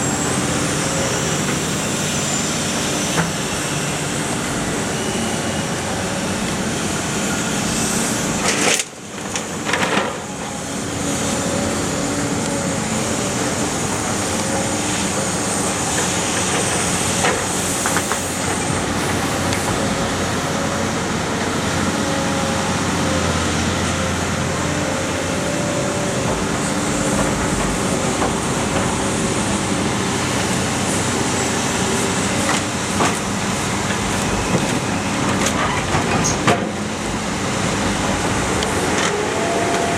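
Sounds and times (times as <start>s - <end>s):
baler mechanical drone: 10.4s - 39.9s.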